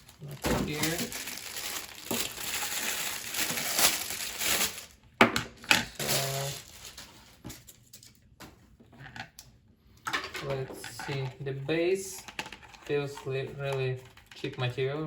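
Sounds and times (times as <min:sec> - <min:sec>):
packaging crinkling: 0:00.0 - 0:05.0, 0:05.8 - 0:07.8.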